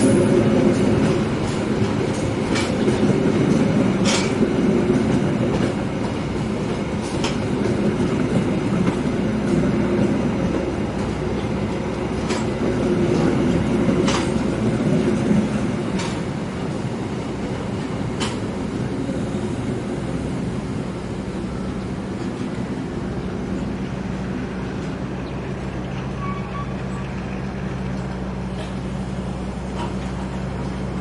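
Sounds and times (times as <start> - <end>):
wheels clacking over rail joints: 0.0 - 18.9, 21.8 - 31.0
train wheels rumbling: 0.0 - 31.0.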